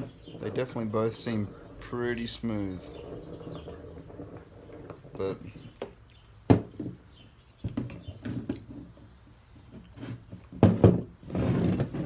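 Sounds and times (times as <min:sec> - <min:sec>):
pipe clamps knocking and clattering: 0:03.5 - 0:07.0.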